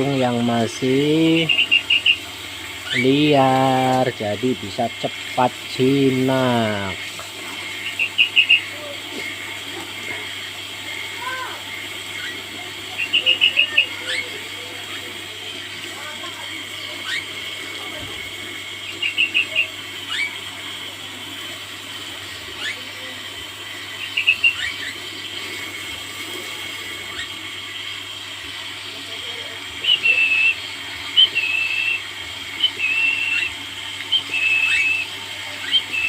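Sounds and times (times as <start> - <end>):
water spraying hiss: 0.0 - 36.0
songbird whistled calls: 1.4 - 2.2, 7.8 - 8.7, 12.1 - 15.0, 17.0 - 17.3, 18.8 - 20.4, 24.0 - 25.0, 29.8 - 36.0.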